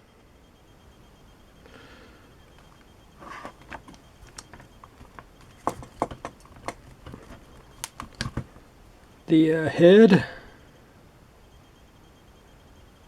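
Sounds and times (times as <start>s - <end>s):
plastic parts rustling: 2.6s - 8.7s
sharp clicks and taps: 3.4s - 8.6s.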